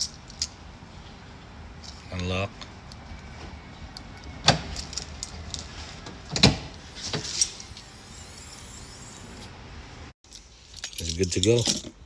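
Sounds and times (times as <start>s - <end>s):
keys jangling: 10.3s - 12.0s.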